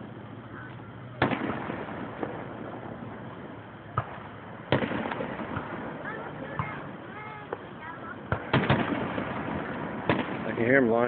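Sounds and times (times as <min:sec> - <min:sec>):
firework crackling: 0:00.0 - 0:11.0
fireworks exploding: 0:00.0 - 0:11.0
small firework pops: 0:00.7 - 0:02.8, 0:03.9 - 0:07.7, 0:08.3 - 0:10.7.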